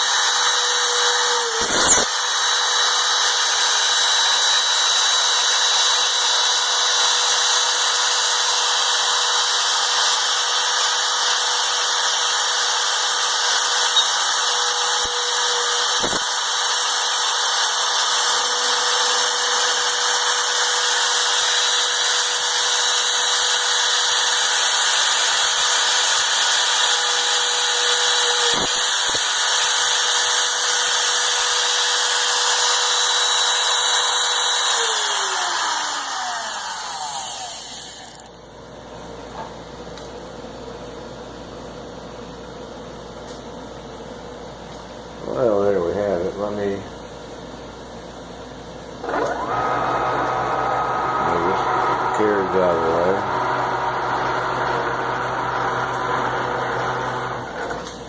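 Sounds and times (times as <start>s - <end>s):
mill spindle whining: 0.0s - 2.2s, 25.0s - 38.4s, 49.0s - 58.0s
end mill drilling metal: 0.0s - 6.6s, 11.8s - 38.4s, 49.0s - 58.0s.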